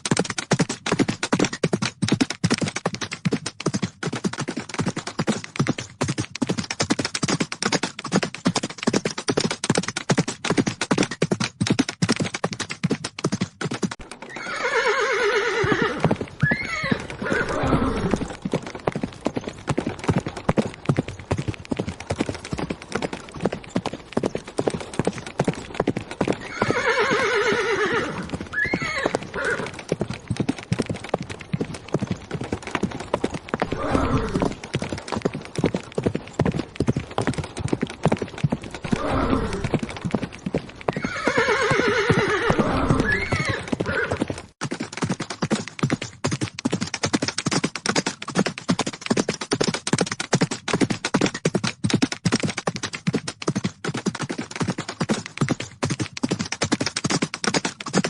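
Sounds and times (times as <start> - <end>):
horse hooves galloping: 0.0 - 58.0
horse whinnying: 14.2 - 18.4, 26.4 - 29.8, 33.6 - 34.6, 38.8 - 39.8, 40.9 - 44.3.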